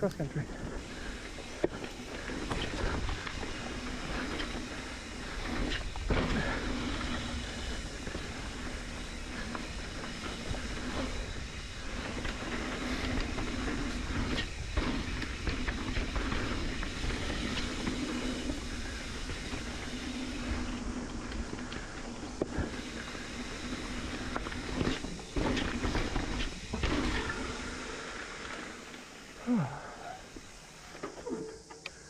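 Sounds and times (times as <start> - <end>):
bike tyres rumbling on dirt: 0.0 - 32.0.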